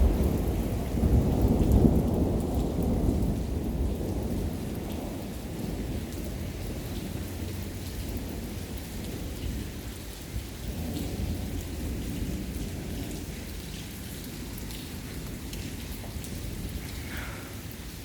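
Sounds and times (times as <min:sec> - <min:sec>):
thunder rumbling: 0:00.0 - 0:09.8
rain falling: 0:00.0 - 0:18.0.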